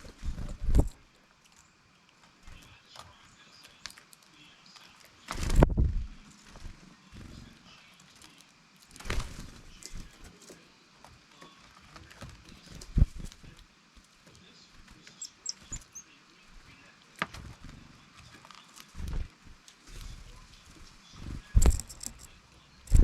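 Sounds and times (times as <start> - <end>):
small birds fluttering and tapping: 0.0 - 23.0
faint high bird chirps: 15.0 - 16.2.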